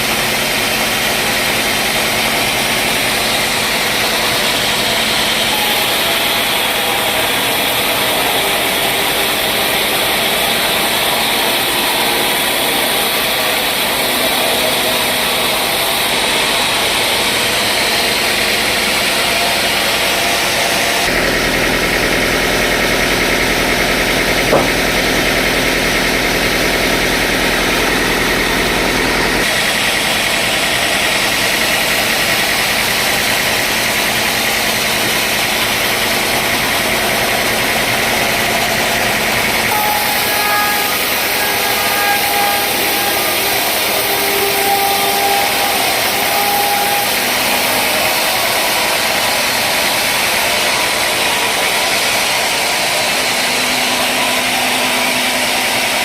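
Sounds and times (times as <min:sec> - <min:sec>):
sawmill machinery droning: 0:00.0 - 0:56.0
short knock: 0:24.5 - 0:25.0.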